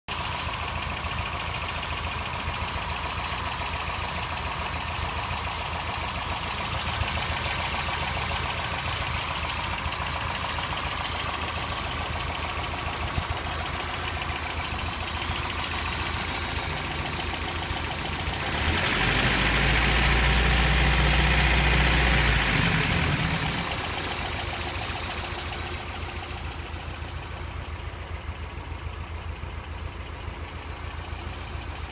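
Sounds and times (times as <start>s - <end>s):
engine idling with ticking: 0.1s - 31.9s
engine revving: 15.1s - 26.3s.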